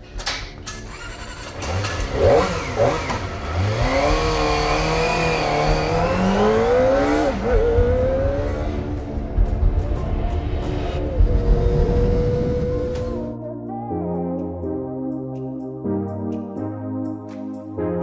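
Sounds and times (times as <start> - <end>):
motorcycle engine revving and accelerating: 0.8 - 9.2, 11.1 - 13.3.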